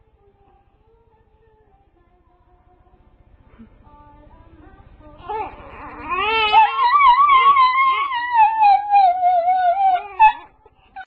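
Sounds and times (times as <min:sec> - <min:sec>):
dog howling: 0:05.2 - 0:11.0.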